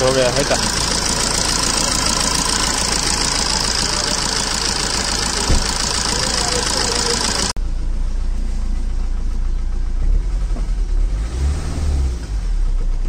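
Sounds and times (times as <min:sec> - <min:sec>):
diesel engine idling: 0:00.0 - 0:11.0
short thump: 0:05.4 - 0:05.8.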